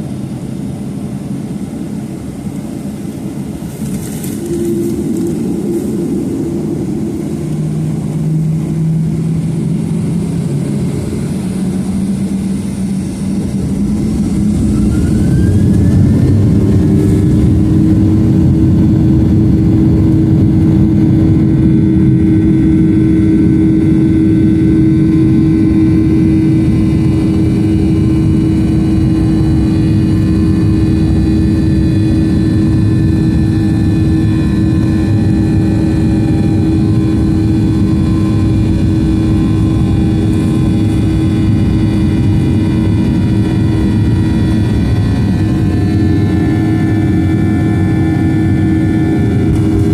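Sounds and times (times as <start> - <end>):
jet engines spooling up: 0.0 - 49.9
high whining tones: 3.4 - 20.4.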